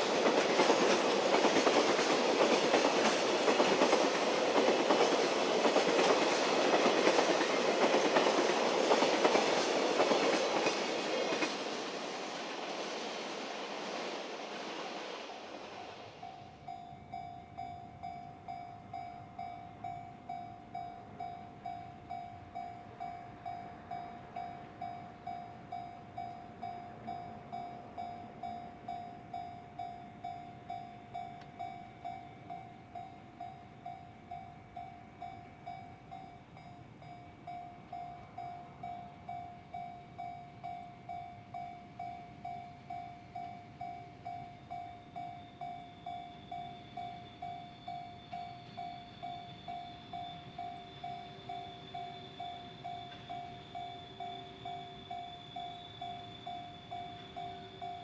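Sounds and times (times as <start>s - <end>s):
high steady tone: 16.1s - 58.0s.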